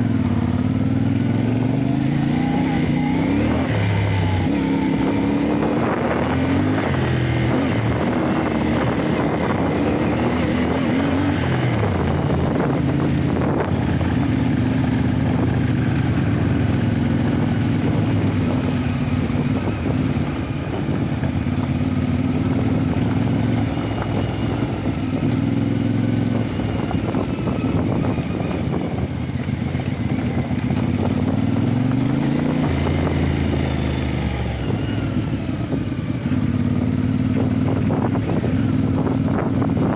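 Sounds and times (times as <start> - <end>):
motorcycle engine running: 0.0 - 39.9
wind and road noise: 0.0 - 39.9.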